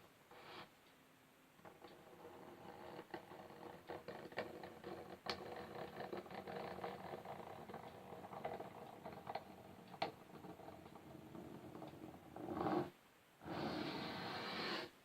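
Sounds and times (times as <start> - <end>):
fingernails scratching on wood: 1.7 - 9.6, 11.4 - 15.0.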